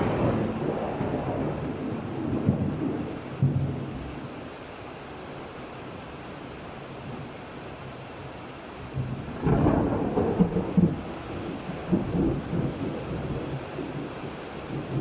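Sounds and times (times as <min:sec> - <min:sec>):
thunder with sharp crackles: 0:00.0 - 0:04.2, 0:08.8 - 0:15.0
steady rain hiss: 0:00.0 - 0:15.0.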